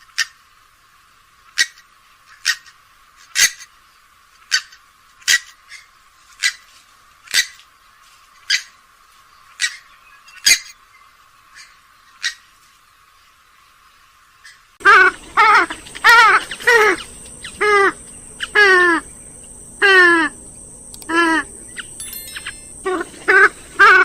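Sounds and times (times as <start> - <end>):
bird giving sharp calls: 14.8 - 20.4.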